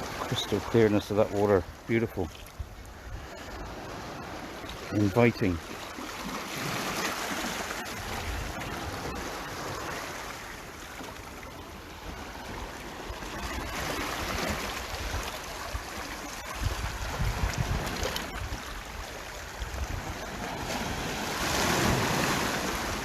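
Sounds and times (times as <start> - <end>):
wind on microphone: 16.6 - 19.0.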